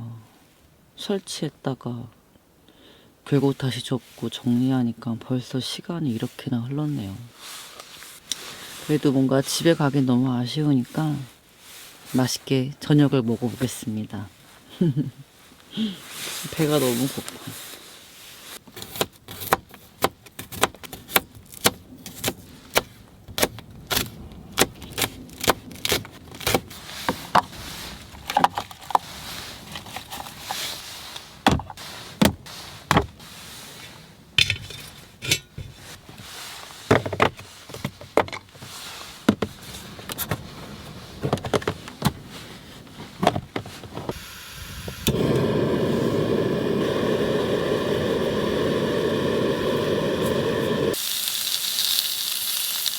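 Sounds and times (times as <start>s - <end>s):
steady loud hiss: 44.1s - 52.9s.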